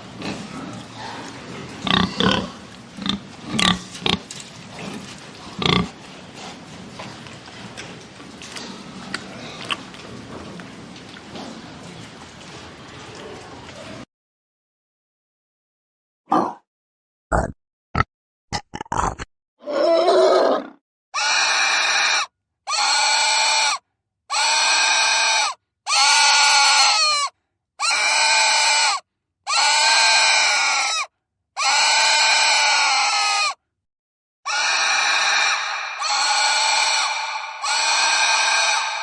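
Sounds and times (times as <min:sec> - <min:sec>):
pig squealing: 0:00.0 - 0:06.0, 0:19.6 - 0:33.6, 0:34.5 - 0:39.0
pig grunts: 0:00.0 - 0:12.0, 0:34.5 - 0:39.0.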